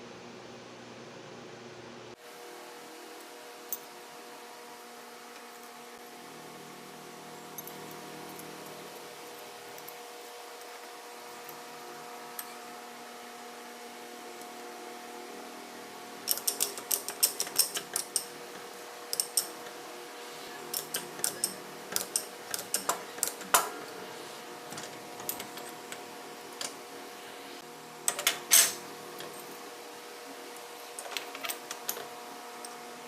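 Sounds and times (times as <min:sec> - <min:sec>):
metallic clicks of hand tools: 0:16.3 - 0:18.3, 0:19.1 - 0:19.5, 0:20.7 - 0:23.7.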